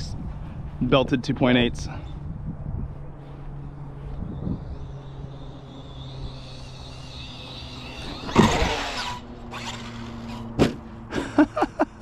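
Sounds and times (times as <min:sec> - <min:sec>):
gritty dirt rush: 0:00.0 - 0:11.5
electric motor whine: 0:02.4 - 0:11.0.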